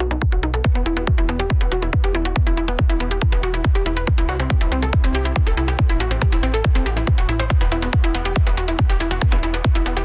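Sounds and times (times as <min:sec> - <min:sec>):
four-on-the-floor kick drum: 0:00.0 - 0:10.0
steady bass: 0:00.0 - 0:10.0
trance music: 0:00.0 - 0:10.0.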